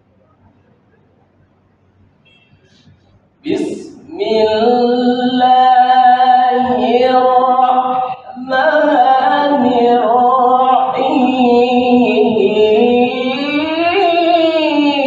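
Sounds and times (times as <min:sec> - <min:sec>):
man reciting melodically: 0:03.4 - 0:15.0.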